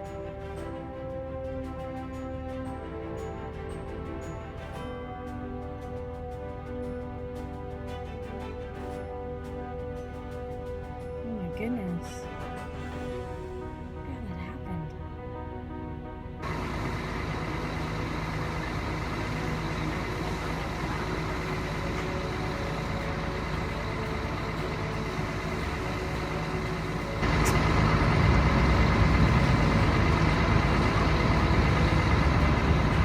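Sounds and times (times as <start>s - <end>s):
vehicle engine humming: 16.4s - 33.0s.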